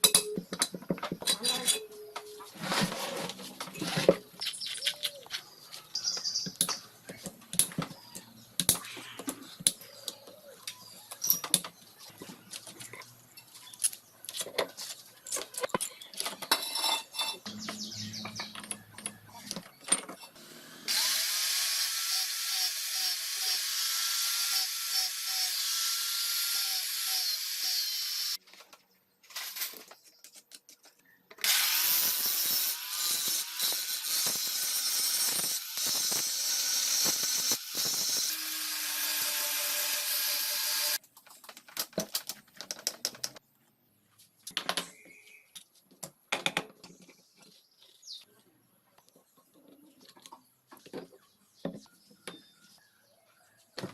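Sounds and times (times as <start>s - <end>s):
power tool running: 20.4s - 28.4s, 31.4s - 41.0s.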